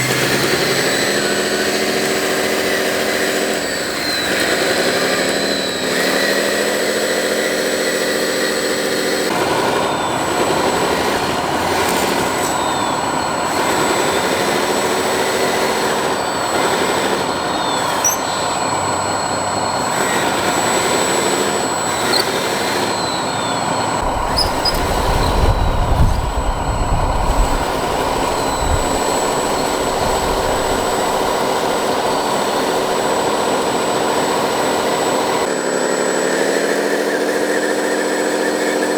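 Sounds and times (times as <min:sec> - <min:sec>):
electric motors and hydraulic whine: 0:00.0 - 0:38.9
low rumbling: 0:23.5 - 0:33.1.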